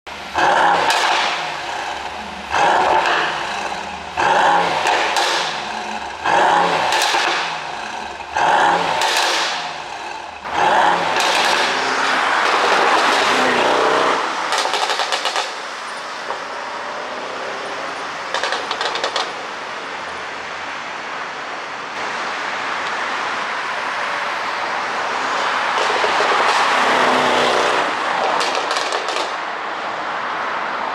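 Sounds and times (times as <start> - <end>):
car engine revving: 0.1 - 20.8, 21.9 - 29.5
exhaust crackles and pops: 0.3 - 16.6, 18.2 - 19.5, 25.3 - 29.6.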